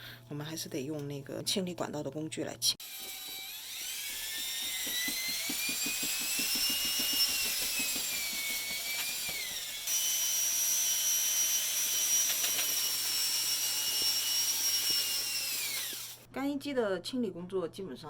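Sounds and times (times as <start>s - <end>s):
electric screwdriver whining: 2.8s - 16.3s.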